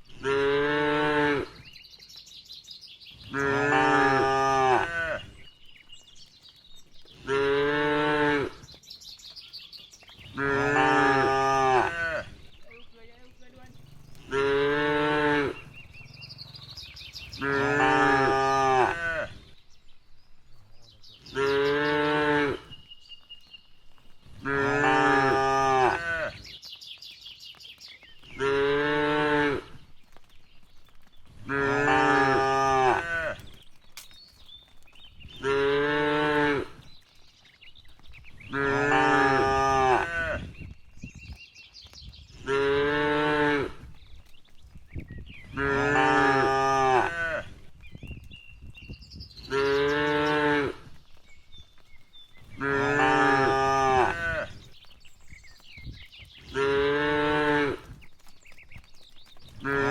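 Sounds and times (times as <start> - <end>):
cow mooing: 3.3 - 5.2, 10.4 - 12.3, 13.8 - 16.7, 17.3 - 19.4, 24.4 - 26.4, 45.6 - 47.5, 52.6 - 54.5.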